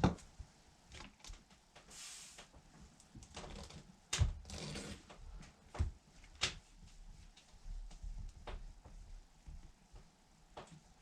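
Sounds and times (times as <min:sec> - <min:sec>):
brief hiss: 0:01.9 - 0:02.5.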